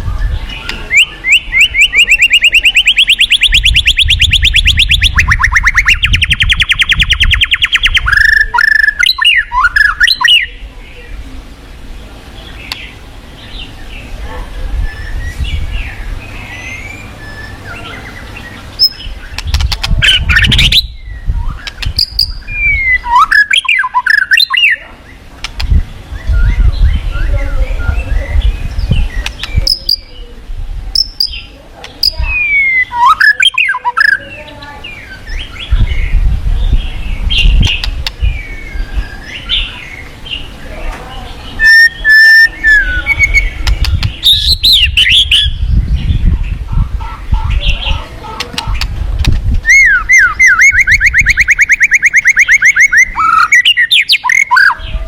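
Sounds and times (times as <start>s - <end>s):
forest birds singing: 0.0s - 55.0s.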